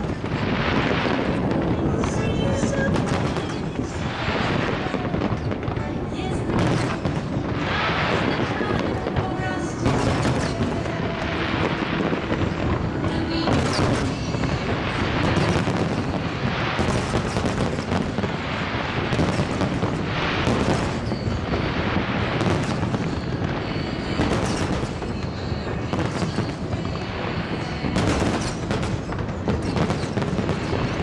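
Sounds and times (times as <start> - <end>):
fireworks bursting and crackling: 0.0 - 31.0.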